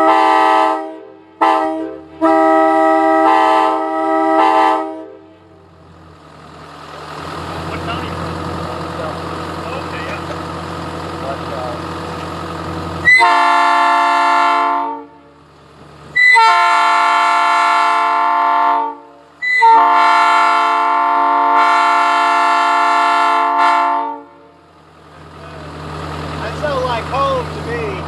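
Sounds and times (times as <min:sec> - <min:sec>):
locomotive air horn blasts: 0:00.0 - 0:05.5, 0:13.0 - 0:15.4, 0:16.1 - 0:24.6.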